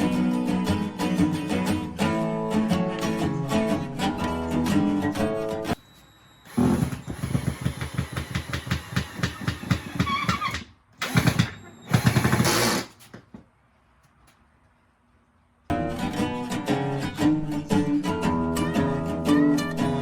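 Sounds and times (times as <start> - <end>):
impact driver hammering screws: 6.5 - 13.1.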